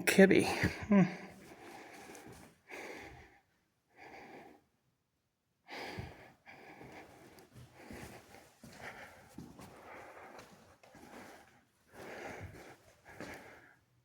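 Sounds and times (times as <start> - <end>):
person breathing: 1.3 - 4.7, 5.7 - 13.8.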